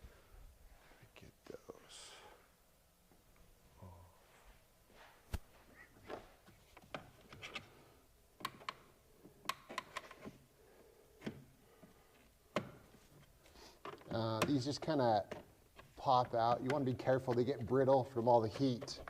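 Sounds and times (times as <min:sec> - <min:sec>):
faint clicks and taps: 0:08.4 - 0:10.4, 0:11.2 - 0:19.0.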